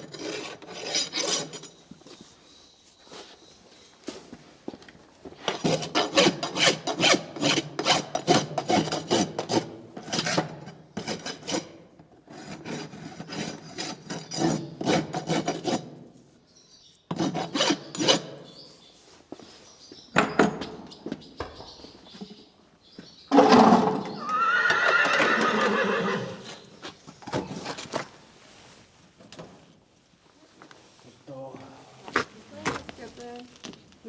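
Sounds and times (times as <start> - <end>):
rasp filing a hoof: 0.0 - 2.4, 5.4 - 16.4, 17.1 - 19.7.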